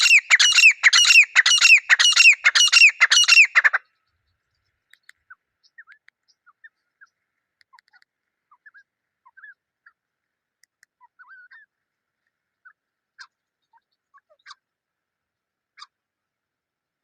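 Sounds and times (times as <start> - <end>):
birds chirping: 0.0 - 9.6.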